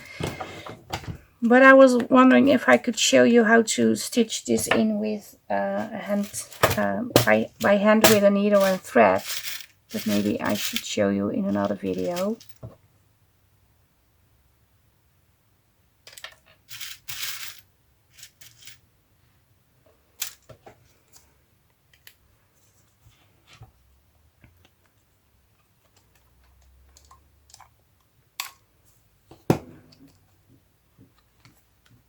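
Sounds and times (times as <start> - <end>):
paper rustling: 5.8 - 12.6.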